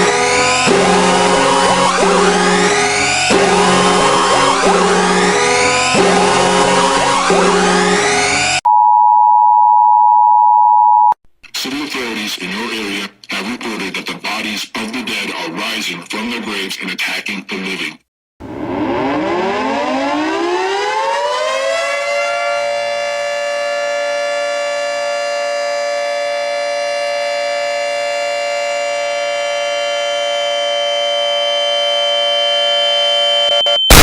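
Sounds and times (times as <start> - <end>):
warning siren winding up: 0.0 - 8.6, 18.5 - 34.0.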